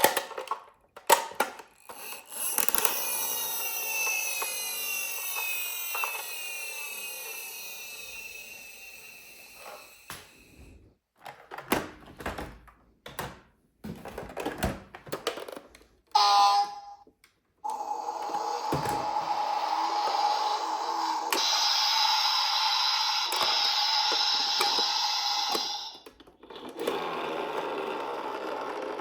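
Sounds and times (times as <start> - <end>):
plastic toy cars clicking: 0.0 - 9.8, 14.1 - 16.1, 17.7 - 29.0
steady toy sound: 1.7 - 10.6, 16.2 - 17.0, 17.6 - 29.0
toy electronic siren: 2.4 - 10.2, 16.2 - 17.0, 17.6 - 26.1
loud toy tone: 2.5 - 10.2, 16.2 - 17.0, 17.6 - 26.1.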